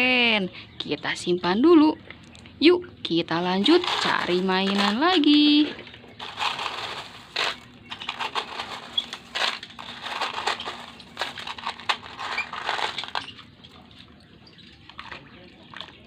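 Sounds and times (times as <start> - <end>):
gravel rattling and crunching: 3.6 - 16.0.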